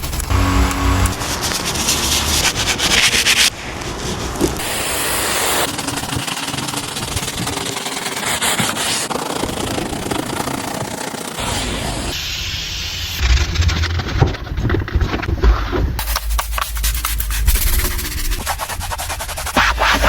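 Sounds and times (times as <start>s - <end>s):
rubbing and scrubbing car: 0.0s - 4.9s, 13.6s - 20.0s.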